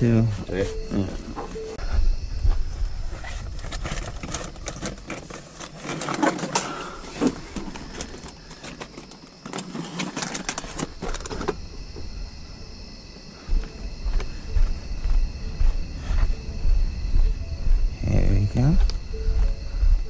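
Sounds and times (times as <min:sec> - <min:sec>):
wind rumble on microphone: 0:01.8 - 0:04.6, 0:11.6 - 0:20.0.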